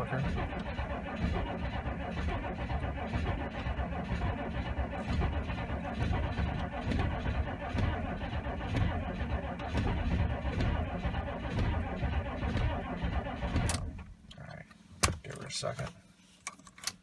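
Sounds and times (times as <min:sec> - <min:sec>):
starter cranking engine slowly: 0:00.0 - 0:13.9.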